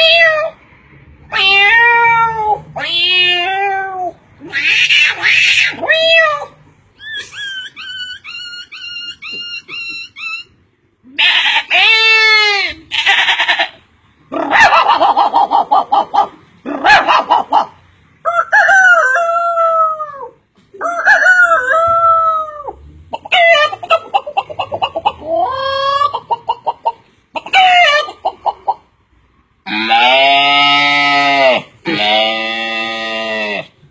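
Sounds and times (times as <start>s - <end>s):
chickens clucking: 14.5s - 19.3s, 20.8s - 29.0s
rooster crowing: 18.2s - 20.0s.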